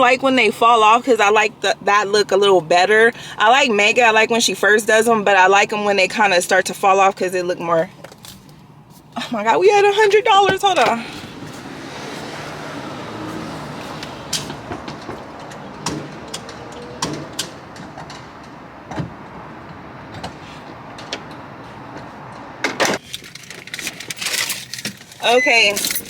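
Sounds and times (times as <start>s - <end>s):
clicks and knocks of handling: 14.3s - 19.1s.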